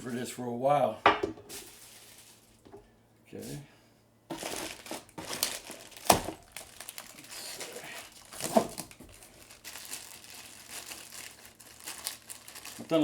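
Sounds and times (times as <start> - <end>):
packing material crinkling: 1.5 - 2.7, 4.3 - 13.0.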